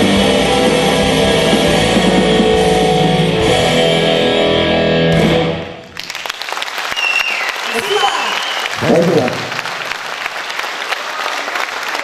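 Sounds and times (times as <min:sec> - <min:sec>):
live band playing: 0:00.0 - 0:06.0
audience applause: 0:05.8 - 0:12.0.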